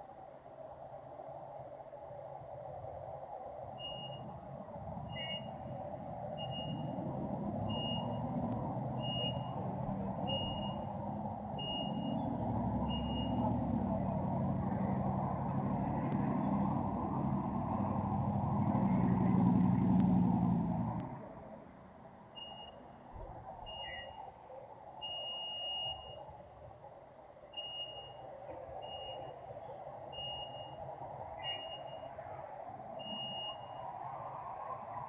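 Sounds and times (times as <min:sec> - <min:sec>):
reversing alarm beeping: 0:03.8 - 0:04.3, 0:05.1 - 0:05.6, 0:06.4 - 0:07.0, 0:07.6 - 0:08.3, 0:09.0 - 0:09.6, 0:10.2 - 0:11.0, 0:11.6 - 0:13.5, 0:22.4 - 0:23.0, 0:23.6 - 0:24.2, 0:25.0 - 0:26.2, 0:27.6 - 0:29.4, 0:30.1 - 0:30.8, 0:31.4 - 0:32.1, 0:33.0 - 0:33.9
vehicle engine running: 0:06.4 - 0:21.2.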